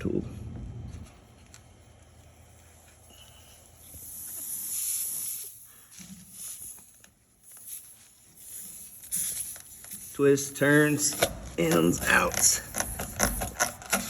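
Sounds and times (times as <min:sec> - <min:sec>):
air hissing from tire: 0:03.0 - 0:10.2
rasp tool scraping: 0:11.6 - 0:14.0.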